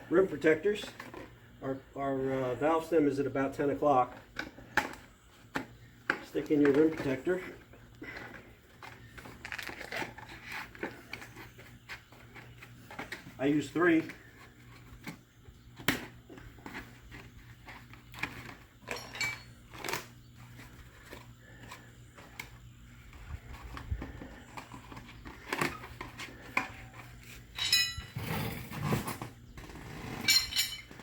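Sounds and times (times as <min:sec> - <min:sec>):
metal tire irons clinking: 0:18.8 - 0:19.6, 0:27.5 - 0:28.7, 0:30.2 - 0:31.0.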